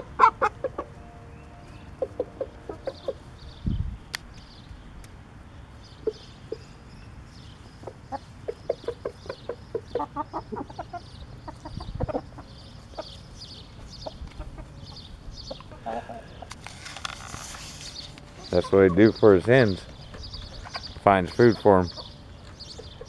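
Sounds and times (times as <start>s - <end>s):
rooster clucking: 0.0s - 1.0s, 2.0s - 3.3s, 7.8s - 13.2s.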